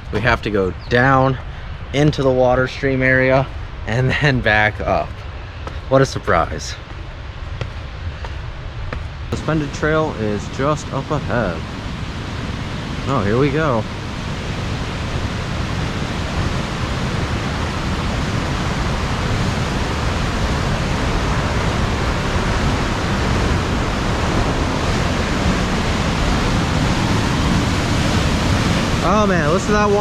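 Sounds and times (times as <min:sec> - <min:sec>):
stream rushing through gorge: 0:09.3 - 0:30.0.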